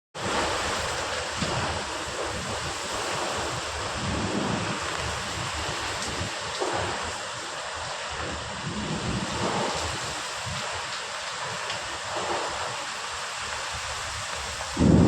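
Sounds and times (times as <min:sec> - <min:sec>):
heavy rain pouring: 0:00.2 - 0:15.0
wind gusts buffeting microphone: 0:00.2 - 0:15.0.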